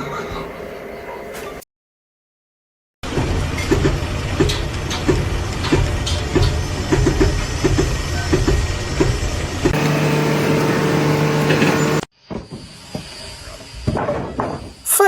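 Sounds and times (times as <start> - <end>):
heavy engine rumbling: 9.7 - 12.1
steady machine hum: 9.7 - 12.1.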